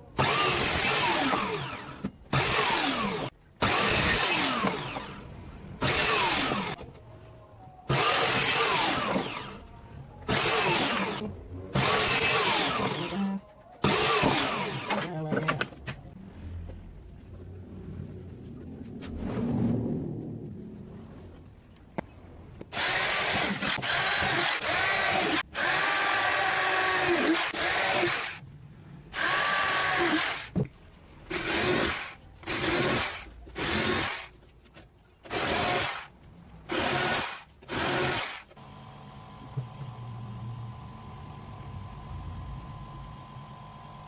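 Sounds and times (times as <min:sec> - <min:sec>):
power tool motor running: 0:11.8 - 0:13.2, 0:13.8 - 0:15.1, 0:22.7 - 0:28.4, 0:29.2 - 0:30.5.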